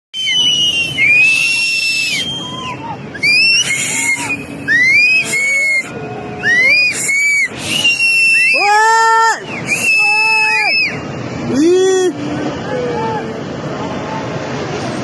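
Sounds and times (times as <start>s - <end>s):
rushing water roar: 0.2s - 15.0s
shrill human cries: 8.3s - 10.9s.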